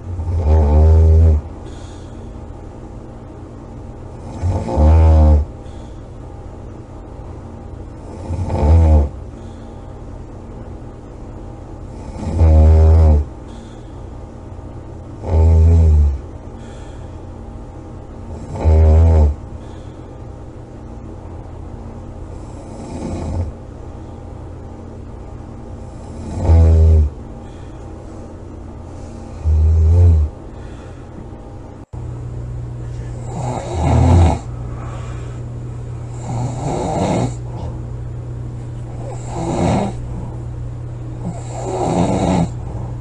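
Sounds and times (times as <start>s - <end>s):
faint steady hum: 0.0s - 43.0s
woman snoring: 0.2s - 2.1s, 4.1s - 5.9s, 8.0s - 9.2s, 11.9s - 13.8s, 15.2s - 16.9s, 18.3s - 19.4s, 22.3s - 23.5s, 25.9s - 27.2s, 29.2s - 30.9s, 33.1s - 35.0s, 36.1s - 37.8s, 38.9s - 40.4s, 41.2s - 43.0s.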